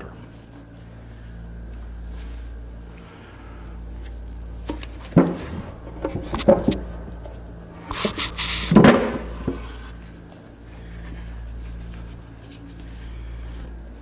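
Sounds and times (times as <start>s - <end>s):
steady low hum: 0.0s - 14.0s
wooden parts knocking on workbench: 5.1s - 6.9s.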